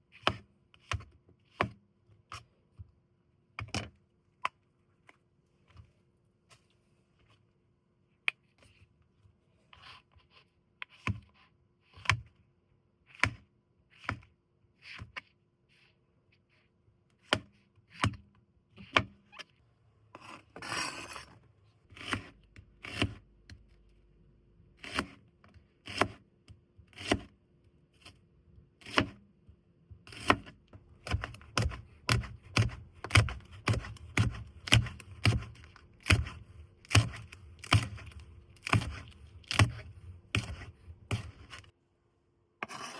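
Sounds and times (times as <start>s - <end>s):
knife chopping on cutting board: 22.0s - 23.2s, 24.8s - 25.2s, 25.8s - 26.2s, 26.9s - 27.3s, 28.8s - 29.2s, 30.0s - 41.7s.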